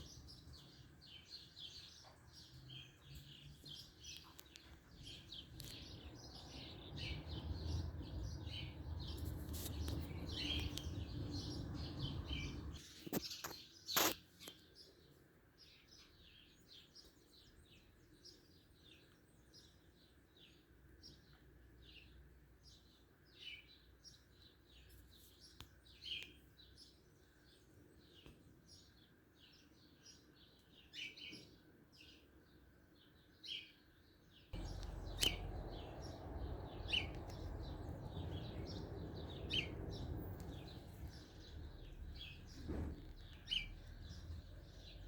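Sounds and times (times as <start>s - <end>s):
birds chirping: 0.0s - 14.1s, 34.6s - 45.0s.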